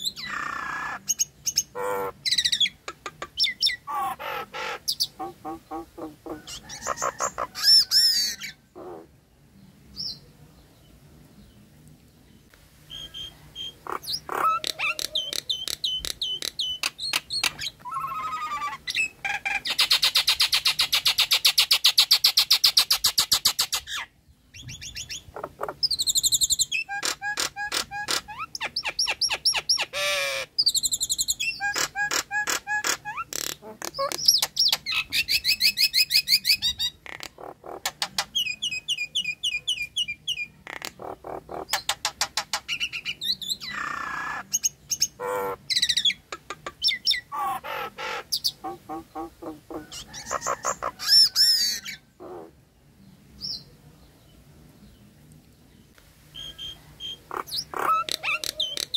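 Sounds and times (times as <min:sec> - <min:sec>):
myna whistling and chattering: 0:12.9 - 0:21.4, 0:56.4 - 0:58.9.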